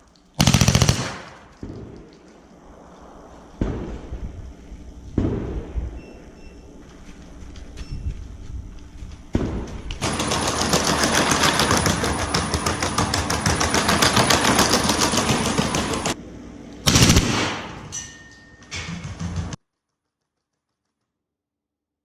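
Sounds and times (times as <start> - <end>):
machine gun firing bursts: 0.0 - 2.1, 9.4 - 16.2, 16.8 - 17.8.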